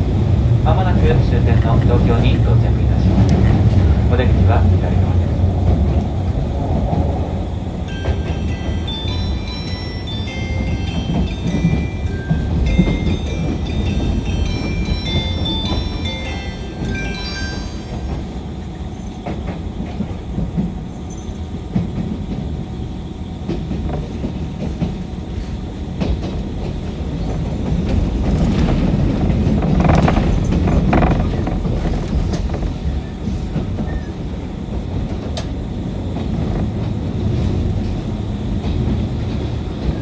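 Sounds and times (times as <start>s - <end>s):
train rumbling on rails: 0.0s - 40.0s
wheels clacking over rail joints: 23.4s - 40.0s.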